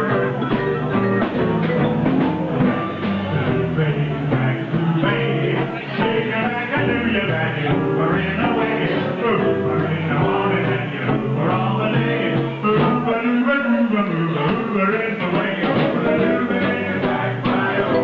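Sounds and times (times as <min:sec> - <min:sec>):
live band playing: 0:00.0 - 0:18.0.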